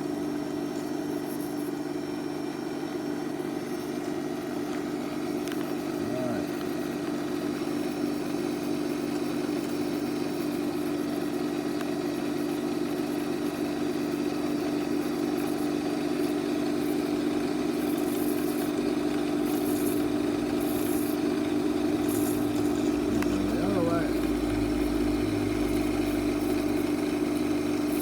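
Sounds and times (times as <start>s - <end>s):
lathe motor humming: 16.1s - 28.0s.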